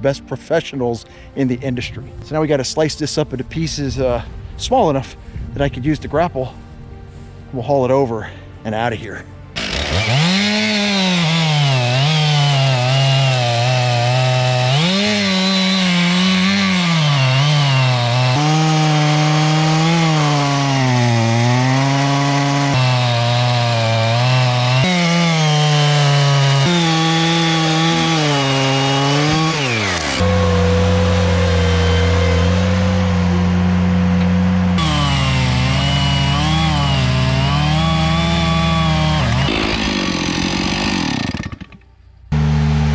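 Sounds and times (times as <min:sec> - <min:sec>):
chainsaw cutting logs: 0:09.5 - 0:42.9.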